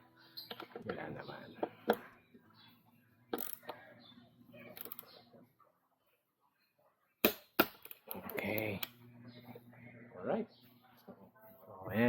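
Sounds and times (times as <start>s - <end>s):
torque wrench ratcheting: 3.4s - 3.8s, 4.8s - 5.0s.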